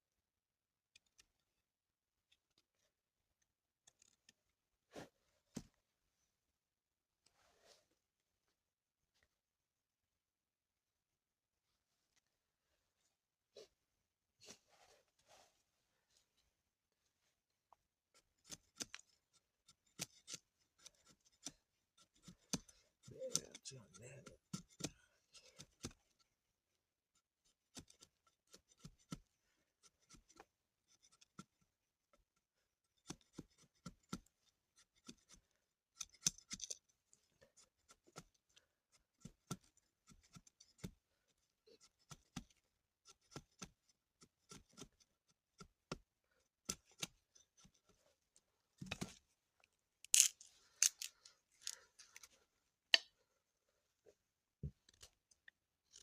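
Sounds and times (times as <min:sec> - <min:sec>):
light clicks and snips: 0:00.9 - 0:01.5, 0:02.3 - 0:04.6, 0:17.7 - 0:26.3
rustling scrape: 0:07.3 - 0:07.9, 0:14.4 - 0:15.7.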